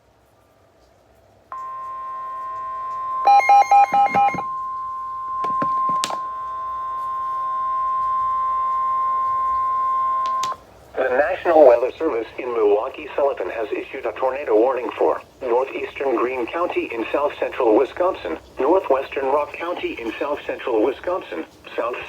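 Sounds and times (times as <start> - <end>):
piercing alarm tone: 1.6 - 10.6.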